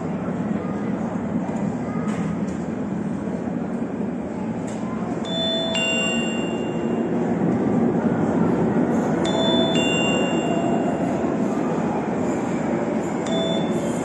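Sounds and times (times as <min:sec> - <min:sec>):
bell-like chimes ringing: 0:05.3 - 0:07.1, 0:09.3 - 0:10.8, 0:13.3 - 0:13.9.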